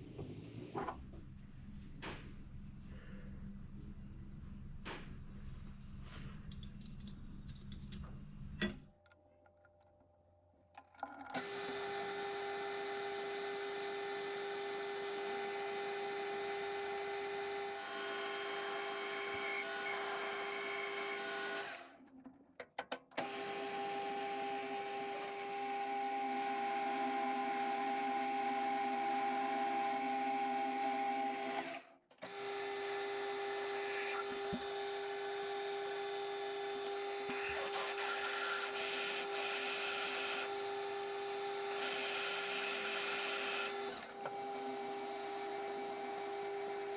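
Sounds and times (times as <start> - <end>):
machine-tool motor whining: 11.3 - 21.9, 23.2 - 46.9.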